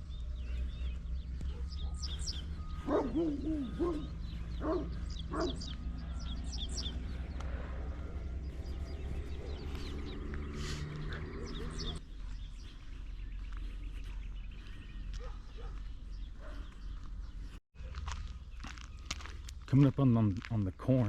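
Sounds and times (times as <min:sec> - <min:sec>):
small birds chirping: 0:00.0 - 0:21.0
dog barking: 0:01.4 - 0:02.1, 0:02.8 - 0:05.8, 0:15.2 - 0:16.8
dog howling call: 0:02.7 - 0:06.2.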